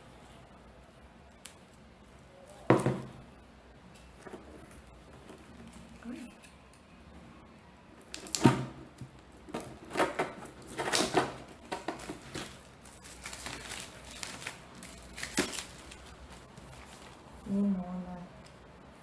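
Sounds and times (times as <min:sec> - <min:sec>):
wrapping being torn and crinkled: 0:08.0 - 0:08.5, 0:10.6 - 0:17.4.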